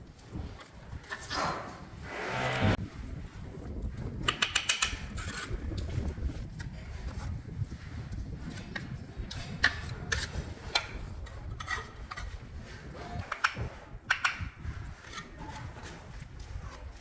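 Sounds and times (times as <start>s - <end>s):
scraping: 1.1s - 2.8s
steady low rumble: 1.9s - 3.2s.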